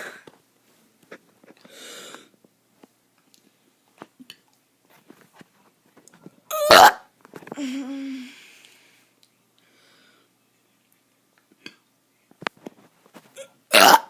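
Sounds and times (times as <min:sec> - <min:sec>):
child burping: 0:13.4 - 0:14.0.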